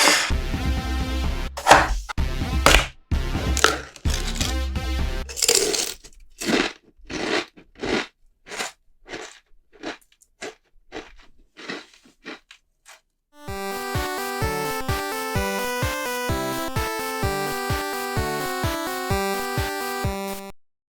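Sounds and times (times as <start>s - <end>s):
music: 0.3s - 5.3s, 13.4s - 20.6s
crisps being crunched: 3.6s - 4.6s, 5.3s - 13.0s.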